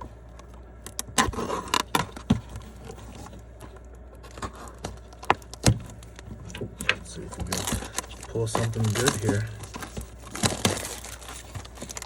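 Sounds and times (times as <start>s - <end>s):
packaging crinkling and snapping: 0.3s - 12.0s.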